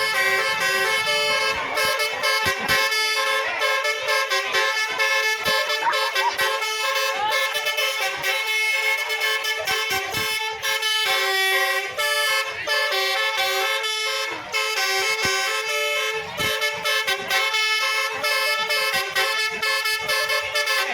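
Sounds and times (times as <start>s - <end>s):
multi-tone bus horn melody: 0.0s - 20.9s.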